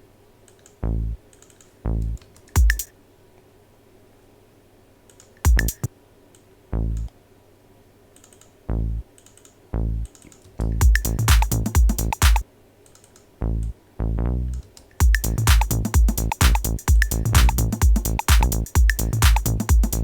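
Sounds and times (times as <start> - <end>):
synth bass notes: 0.8 - 1.2, 1.9 - 2.2, 5.5 - 5.9, 6.7 - 7.1, 8.7 - 9.0, 9.7 - 12.4, 13.4 - 20.0
electronic kick drum hits: 2.6 - 2.9, 5.5 - 5.9, 10.8 - 12.4, 15.0 - 20.0
faint clicking: 8.1 - 8.6, 9.2 - 10.6, 12.8 - 13.8.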